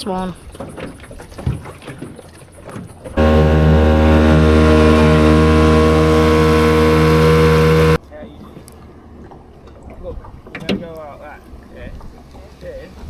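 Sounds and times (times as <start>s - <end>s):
boat engine running: 3.2s - 8.0s.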